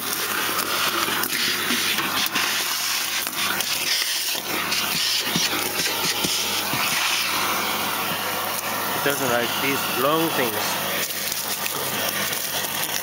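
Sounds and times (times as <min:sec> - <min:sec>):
vacuum cleaner rushing hiss: 0:00.0 - 0:13.0
debris rattling through hose: 0:10.3 - 0:13.0.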